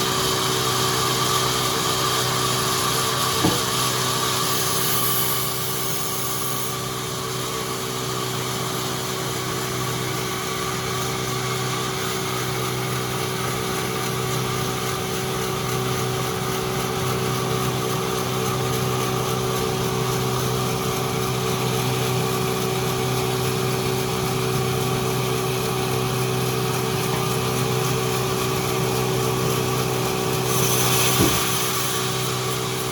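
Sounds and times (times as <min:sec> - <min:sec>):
sawmill machinery motor hum: 0:00.0 - 0:32.9
sharp knock: 0:03.4 - 0:03.8, 0:31.2 - 0:31.6.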